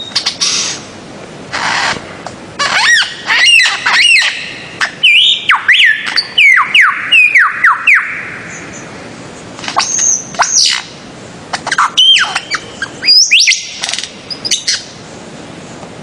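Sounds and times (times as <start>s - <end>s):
bird squawking loudly: 2.6s - 8.6s.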